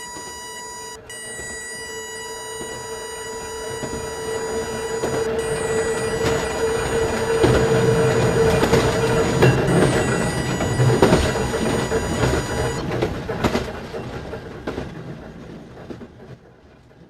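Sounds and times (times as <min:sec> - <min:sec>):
level crossing bell tones: 0:00.0 - 0:12.8
train wheels clattering over rails: 0:12.8 - 0:17.0.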